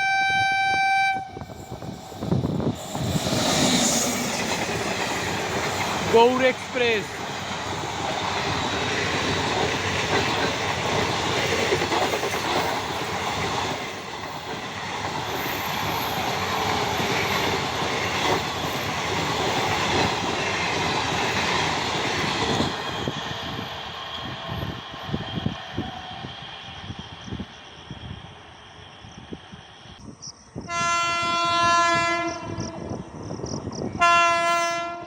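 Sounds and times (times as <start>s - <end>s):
passenger train passing: 0.0s - 35.0s
wheels clacking over rail joints: 2.9s - 23.0s.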